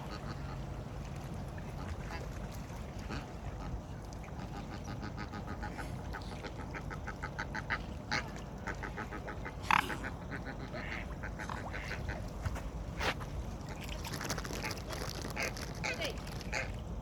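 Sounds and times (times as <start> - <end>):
ducks quacking: 4.5 - 12.3.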